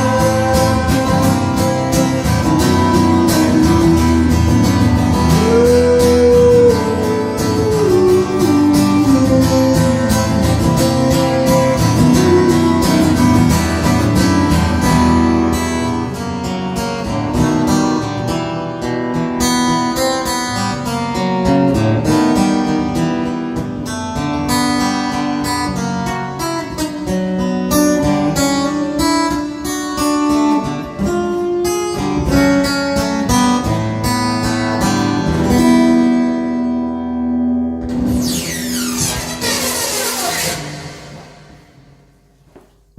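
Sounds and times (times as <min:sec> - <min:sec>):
acoustic guitar strumming: 0:00.0 - 0:42.7.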